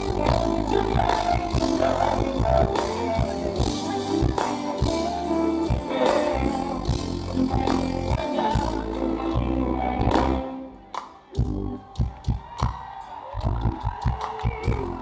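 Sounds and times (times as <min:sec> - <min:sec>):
heavy bass line: 0:00.0 - 0:10.4
guitar: 0:00.0 - 0:12.2
live reggae band: 0:00.0 - 0:15.0.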